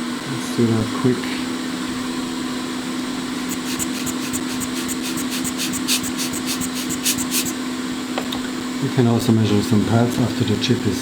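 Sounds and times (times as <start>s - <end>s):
equipment blower whirring hum: 2.0s - 8.2s.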